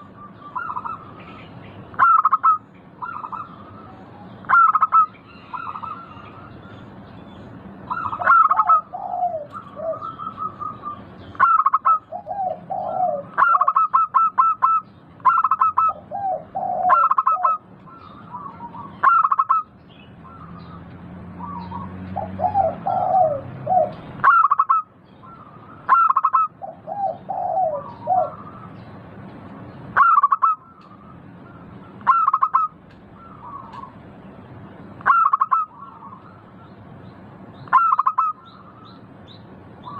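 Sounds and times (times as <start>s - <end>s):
dove cooing: 0.0s - 1.2s, 2.0s - 6.5s, 7.9s - 19.7s, 21.4s - 28.7s, 30.0s - 34.0s, 35.0s - 36.4s, 37.7s - 38.6s.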